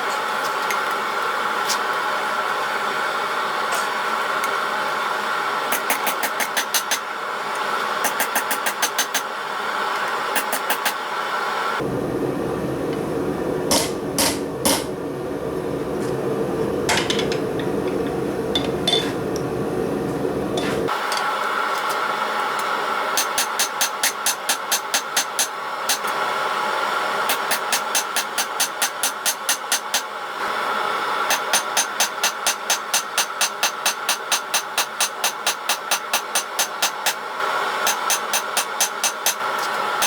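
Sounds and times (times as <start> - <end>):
deep steady rumble: 11.8 - 20.6.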